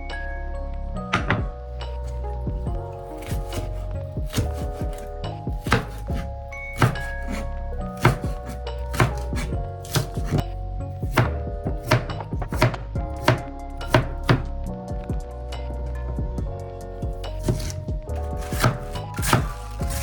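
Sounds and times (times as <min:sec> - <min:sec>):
knife chopping on cutting board: 0:01.2 - 0:02.2, 0:03.0 - 0:10.4, 0:11.0 - 0:14.5, 0:17.3 - 0:20.0.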